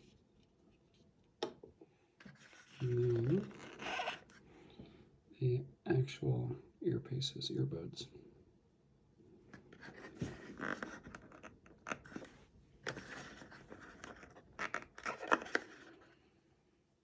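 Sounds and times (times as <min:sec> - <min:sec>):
packaging rustling and scraping: 0:02.2 - 0:04.4, 0:09.7 - 0:16.2.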